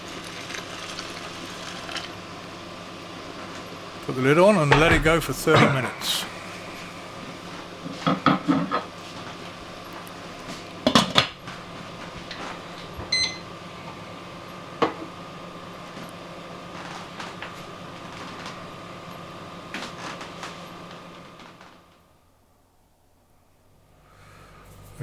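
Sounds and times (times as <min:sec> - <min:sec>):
steady hum: 0:04.0 - 0:07.9.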